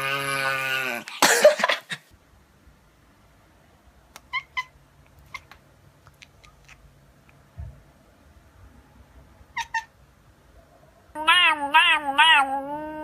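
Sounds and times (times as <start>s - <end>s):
pet animal squeaky calls: 4.3s - 5.5s, 9.6s - 9.9s
soft low thump: 7.6s - 7.8s.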